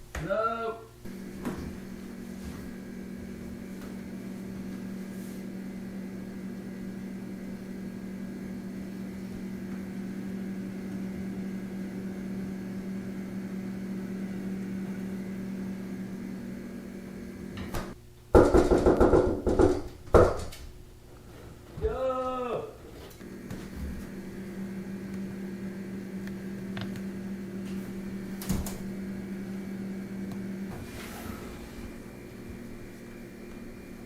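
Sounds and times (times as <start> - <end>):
appliance hum: 0.0 - 34.0
loud rapid knocking: 18.4 - 20.3.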